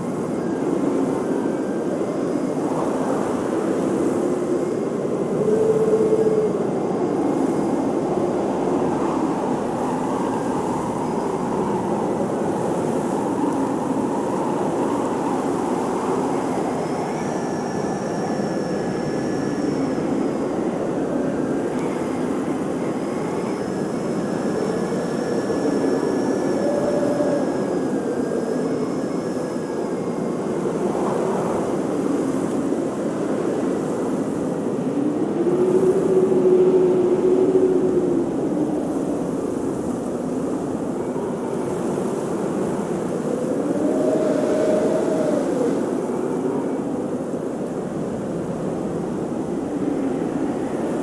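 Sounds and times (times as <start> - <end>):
howling blizzard wind: 0.0 - 51.0
thin high wind whistles: 0.0 - 51.0.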